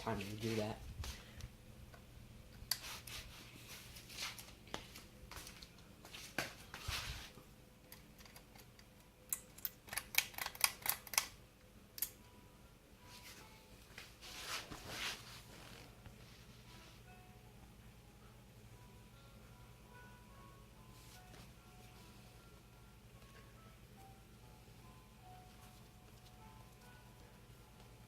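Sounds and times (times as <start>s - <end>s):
ceiling fan humming: 0.0s - 28.0s.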